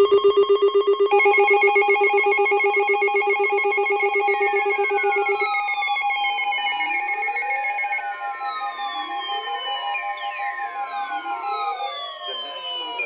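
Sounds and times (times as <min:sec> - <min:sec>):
fast-pulsing low beep: 0:00.0 - 0:08.0.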